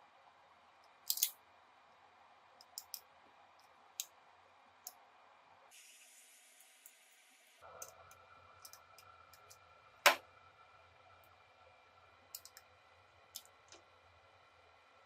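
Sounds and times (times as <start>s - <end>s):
small plastic parts clicking: 0.9s - 1.4s, 2.6s - 3.1s.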